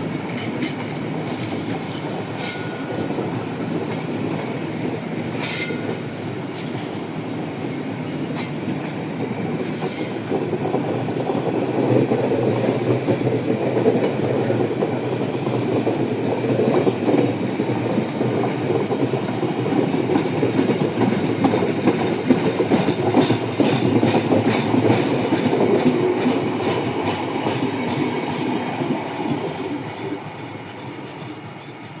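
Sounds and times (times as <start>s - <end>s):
train carriages rumbling past: 0.0s - 32.0s
high wheel squeal: 1.3s - 3.0s, 5.4s - 6.0s
wheels clacking over rail joints: 7.6s - 32.0s.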